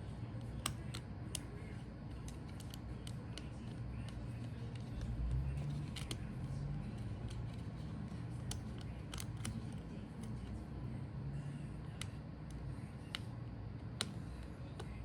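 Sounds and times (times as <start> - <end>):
steady low hum: 0.0 - 15.0
small clicks and taps: 2.1 - 5.1, 7.2 - 10.4.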